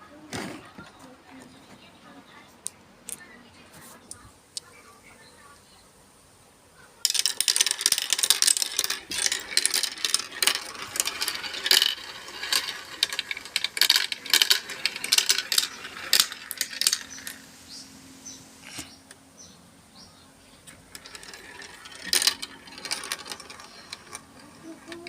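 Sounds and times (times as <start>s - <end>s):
marbles rattling down marble run: 7.0s - 17.5s, 20.9s - 25.0s.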